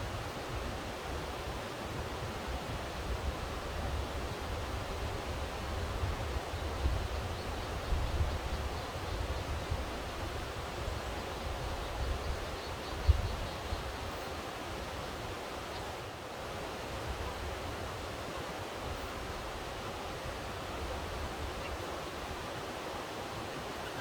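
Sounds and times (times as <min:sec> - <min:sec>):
wind on microphone: 0:00.0 - 0:15.4.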